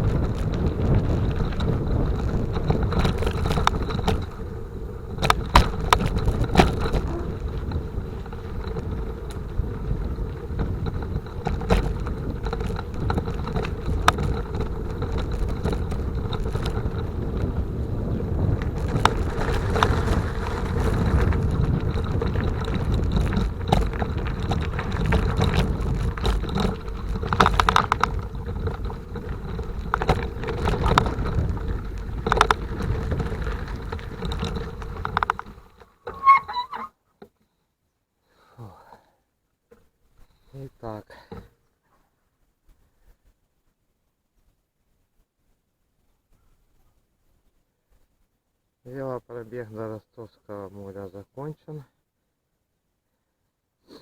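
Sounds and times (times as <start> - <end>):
wind rumbling on microphone: 0.0 - 36.9
bicycle knocks and rattles: 0.0 - 37.4.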